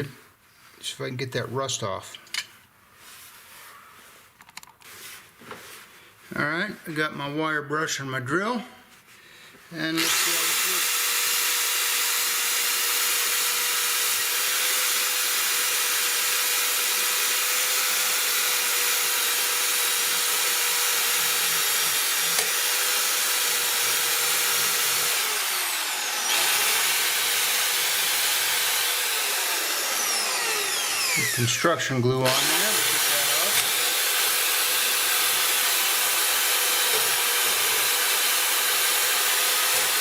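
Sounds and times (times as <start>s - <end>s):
electric drill motor whine: 10.0s - 40.0s.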